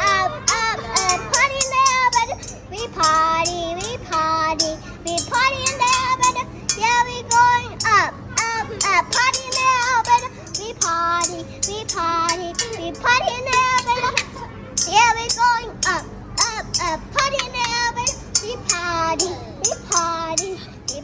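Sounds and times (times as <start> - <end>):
young children singing: 0.0 - 21.0
sharp percussive taps: 8.4 - 20.2.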